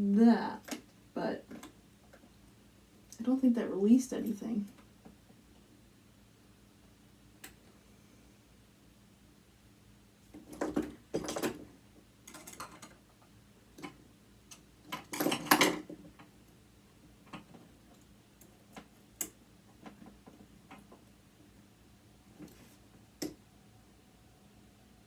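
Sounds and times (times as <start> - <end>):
light metal clicks and taps: 7.4 - 7.7, 17.3 - 21.1.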